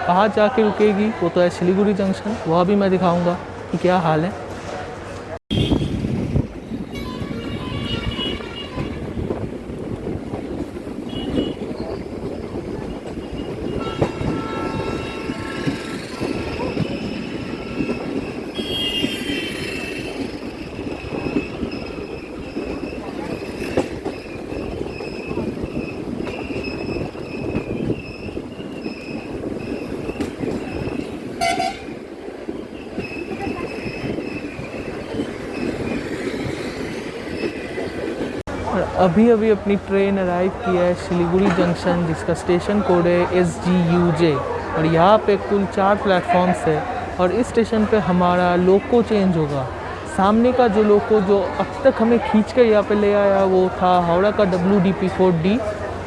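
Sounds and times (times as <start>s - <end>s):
train coaches rumbling on track: 0.0s - 56.0s
train horn toot: 6.9s - 9.3s, 11.0s - 11.7s, 13.6s - 16.4s, 18.5s - 20.3s, 31.4s - 32.0s.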